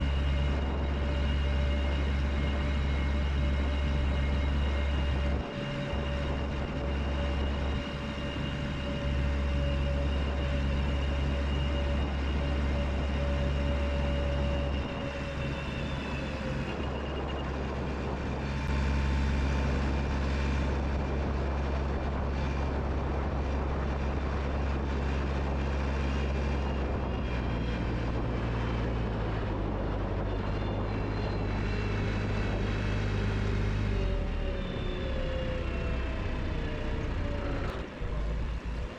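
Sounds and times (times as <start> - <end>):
sawmill engine droning: 0.0 - 38.9
saw whining through log: 29.6 - 38.9.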